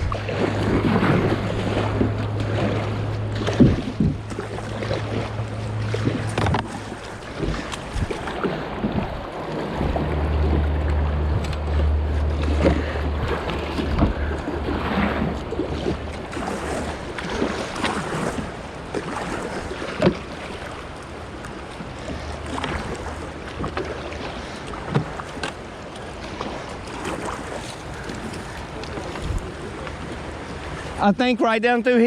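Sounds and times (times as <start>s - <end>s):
wind buffeting microphone: 0.0s - 20.7s, 26.8s - 31.0s
river water rushing: 0.0s - 32.0s.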